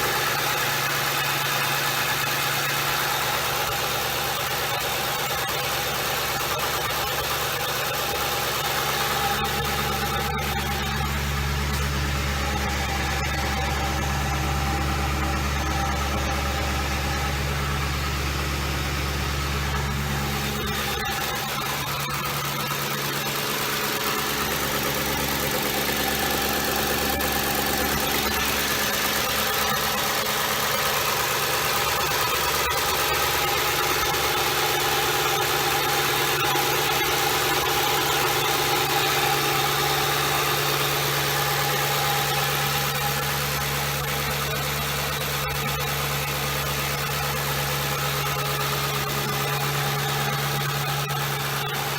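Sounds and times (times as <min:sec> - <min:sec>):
car engine idling: 0:00.0 - 0:51.9
strong low hum: 0:10.4 - 0:29.7.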